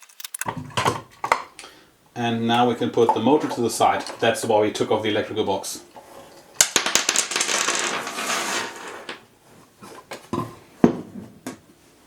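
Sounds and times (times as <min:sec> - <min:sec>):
metal parts clattering and scraping: 0:00.0 - 0:01.4, 0:03.0 - 0:05.0, 0:05.8 - 0:09.2.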